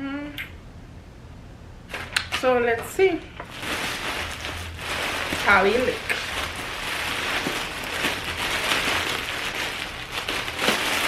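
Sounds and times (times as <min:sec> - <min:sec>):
plastic packaging crinkling: 0:01.9 - 0:02.5, 0:03.4 - 0:11.0.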